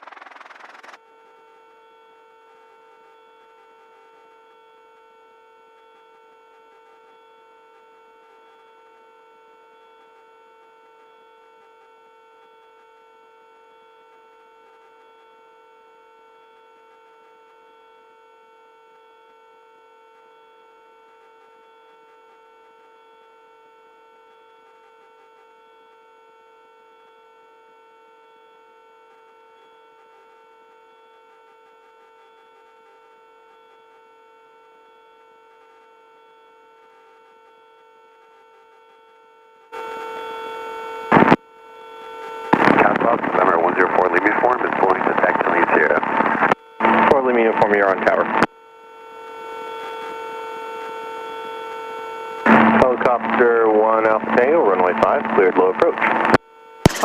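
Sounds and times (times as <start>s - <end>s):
steady helicopter whine: 0.0s - 1.0s.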